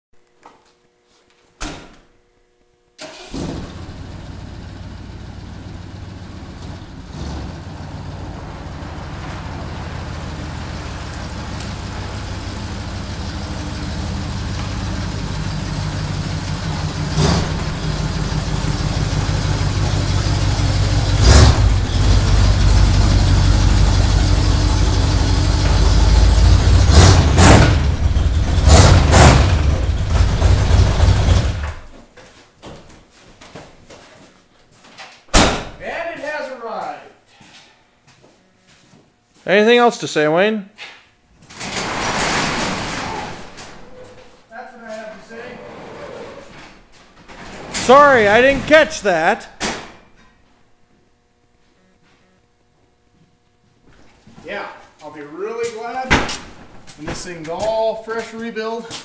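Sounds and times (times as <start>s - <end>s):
engine starting and running: 3.0s - 31.9s.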